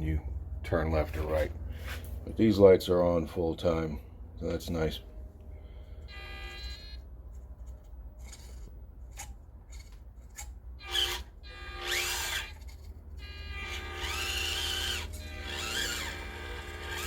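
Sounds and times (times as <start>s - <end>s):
small electric motor whining: 5.9s - 7.0s, 8.2s - 17.0s.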